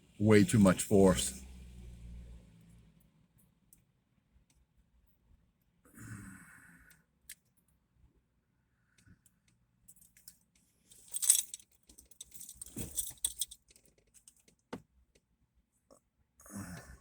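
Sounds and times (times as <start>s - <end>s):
jingling and rustling: 10.9s - 13.9s.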